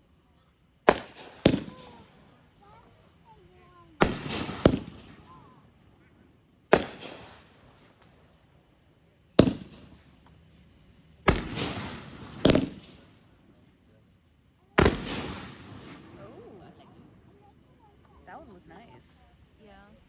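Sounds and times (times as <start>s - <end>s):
fireworks bangs: 0.8s - 8.4s, 9.4s - 10.4s, 11.1s - 13.6s, 14.7s - 19.2s.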